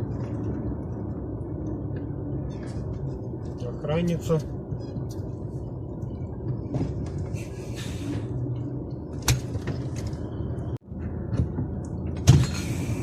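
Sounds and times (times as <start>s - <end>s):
knocks and rattles in cab: 6.1s - 7.4s, 11.0s - 12.6s.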